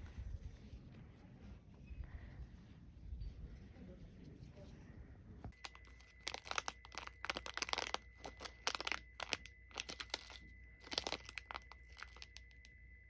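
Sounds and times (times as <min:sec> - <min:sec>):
crinkling and crunching: 0:05.6 - 0:12.7
faint high-pitched tone: 0:05.6 - 0:13.0.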